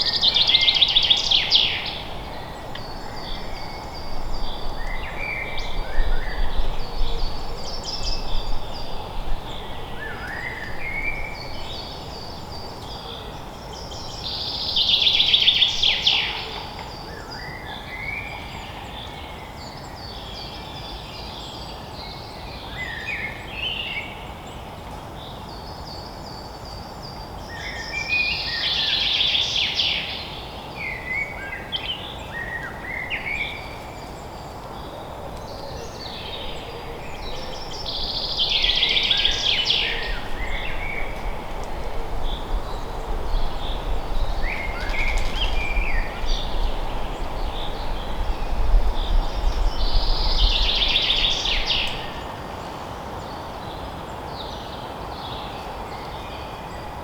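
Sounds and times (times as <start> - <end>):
steady background hiss: 0.0 - 57.0
birds singing and chirping: 26.7 - 57.0.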